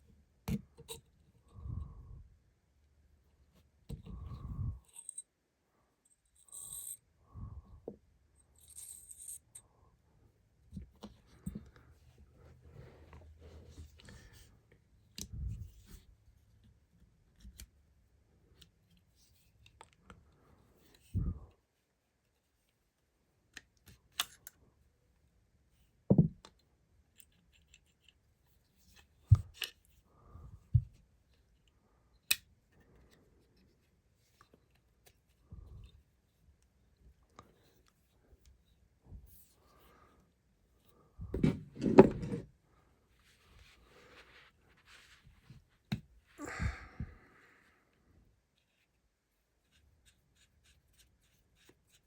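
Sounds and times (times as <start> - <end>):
metal parts scraping and clinking: 8.5 - 9.6.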